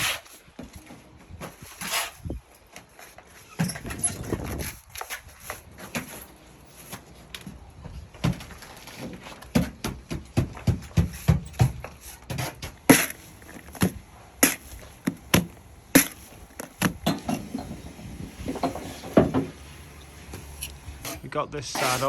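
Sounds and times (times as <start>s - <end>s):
hand tools knocking on brick: 9.5s - 13.2s.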